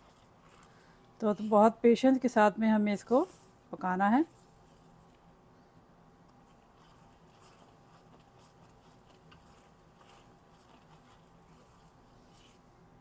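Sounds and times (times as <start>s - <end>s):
low steady hum: 0.0s - 13.0s
syrup simmering with small pops: 6.3s - 12.2s.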